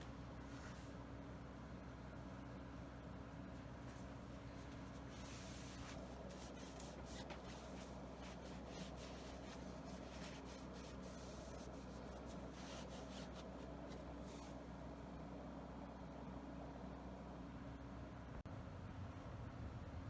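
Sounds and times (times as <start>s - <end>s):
rubbing and scraping strokes: 3.9s - 14.6s.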